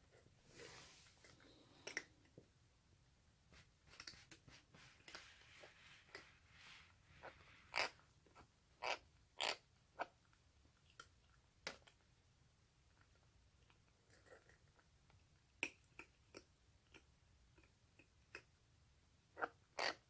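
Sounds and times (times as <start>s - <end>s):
kitten chewing and smacking: 12.8s - 18.6s.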